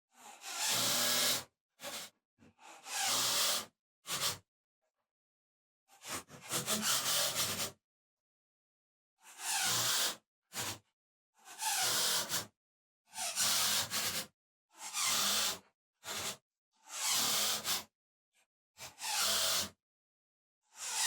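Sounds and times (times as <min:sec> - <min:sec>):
drill driving screws into wood: 0:00.7 - 0:01.4.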